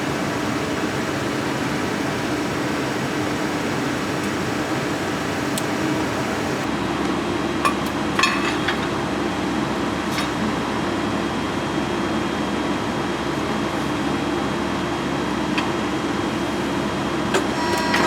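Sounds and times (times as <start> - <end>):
hydraulic pump humming: 0.0 - 6.7.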